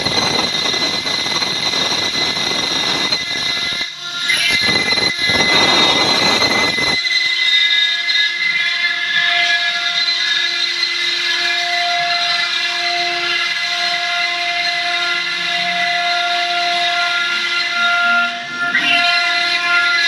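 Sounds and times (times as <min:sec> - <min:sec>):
harsh stone cutting noise: 0:00.0 - 0:07.0
router spindle whine: 0:00.0 - 0:20.0.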